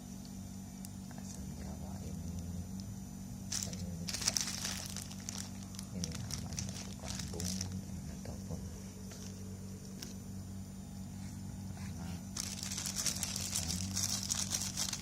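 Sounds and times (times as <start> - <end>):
steady low hum: 0.0 - 15.0
crinkling and rustling: 3.5 - 8.4, 9.0 - 10.2, 11.8 - 15.0.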